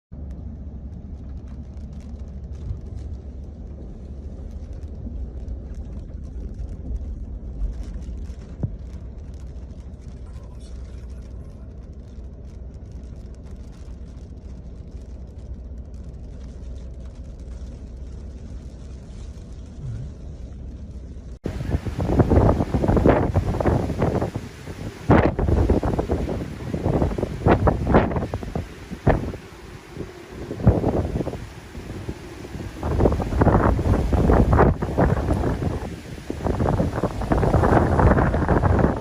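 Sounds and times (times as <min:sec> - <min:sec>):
wind buffeting microphone: 0:21.4 - 0:39.0.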